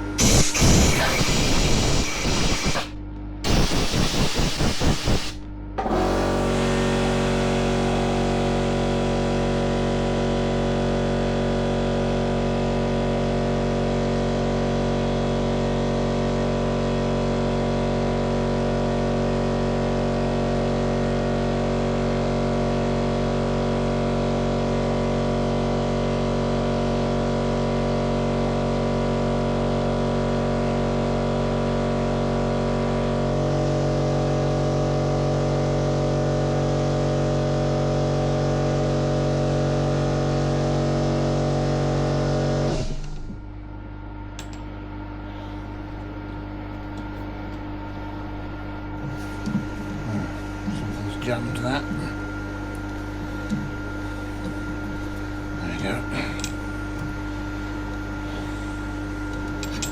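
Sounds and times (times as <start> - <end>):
milling machine humming: 0.0 - 13.2, 32.4 - 59.9.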